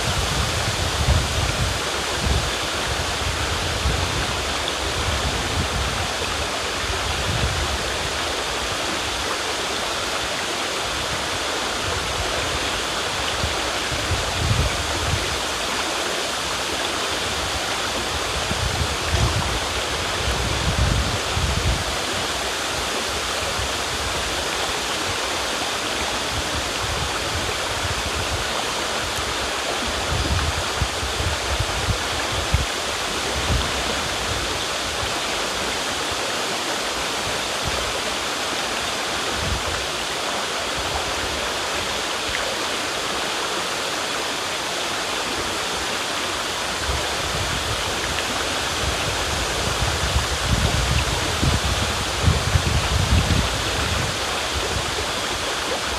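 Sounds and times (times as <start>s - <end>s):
river water rushing: 0.0s - 55.9s.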